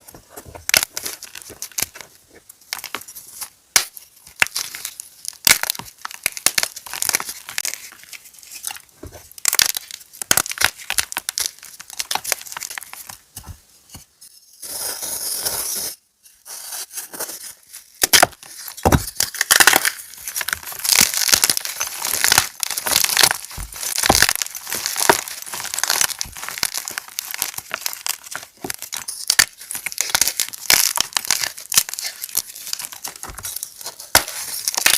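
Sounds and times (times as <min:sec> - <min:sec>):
chalk crunching: 0:14.6 - 0:34.9.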